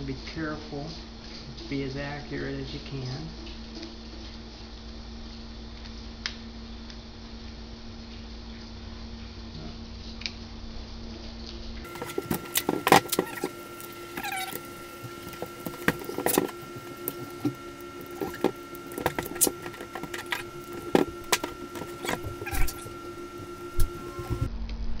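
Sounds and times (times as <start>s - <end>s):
steady hum: 11.7s - 24.9s
duct tape crinkling: 11.9s - 24.5s
tape scraping: 11.9s - 24.5s.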